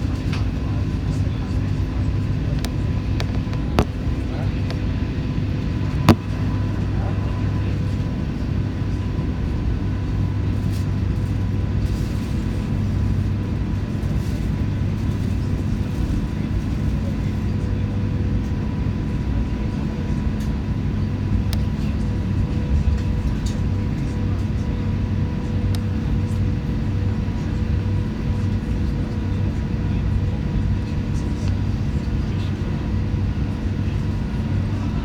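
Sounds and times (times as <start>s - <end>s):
airplane cabin hum: 0.0s - 35.0s.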